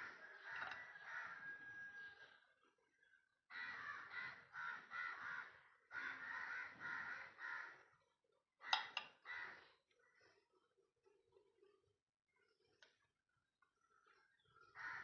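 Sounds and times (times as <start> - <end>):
crow cawing: 0.0 - 2.2, 3.5 - 8.0, 8.6 - 9.8, 14.8 - 15.0.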